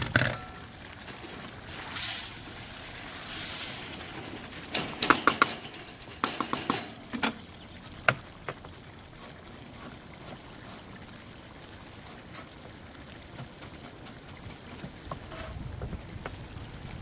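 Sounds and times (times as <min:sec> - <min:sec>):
metal utensil clinking on a pan: 0:00.0 - 0:01.3, 0:04.0 - 0:07.4.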